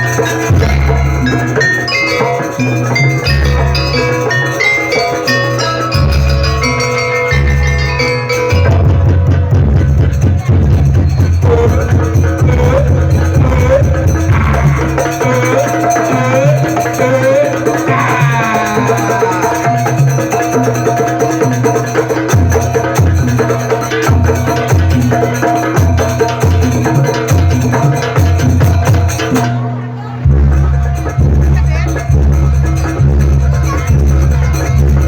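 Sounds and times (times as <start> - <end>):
gliding melody: 0.0 - 16.7
hand drum playing: 0.0 - 35.0.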